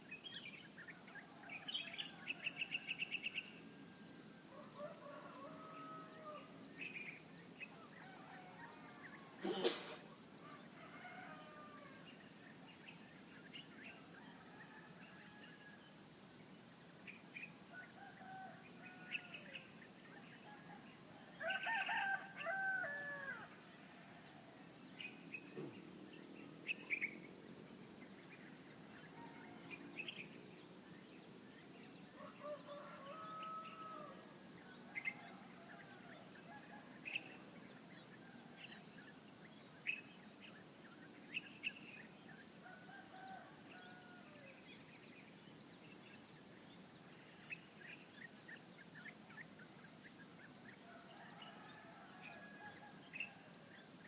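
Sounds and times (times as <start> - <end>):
steady high-pitched hiss: 0.0 - 54.0
rooster crowing: 21.4 - 23.5, 32.2 - 34.2.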